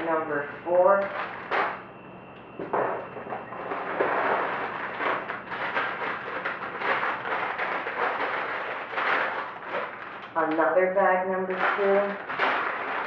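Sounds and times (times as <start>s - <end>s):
plastic bags crinkling: 2.8s - 10.6s, 11.4s - 13.0s.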